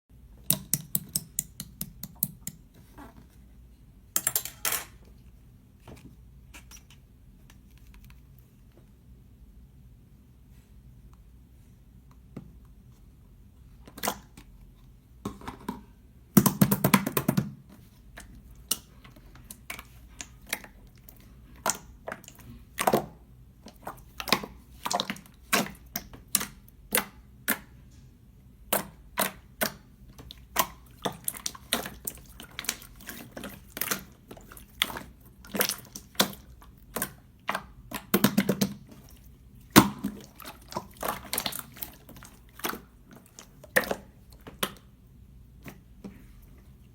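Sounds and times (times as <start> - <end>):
slime squelching and popping: 16.4 - 27.8, 28.6 - 44.9.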